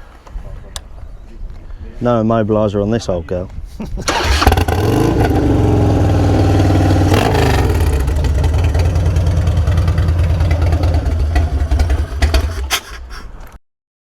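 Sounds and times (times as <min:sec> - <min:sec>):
motorcycle engine revving and idling: 0:04.1 - 0:12.9.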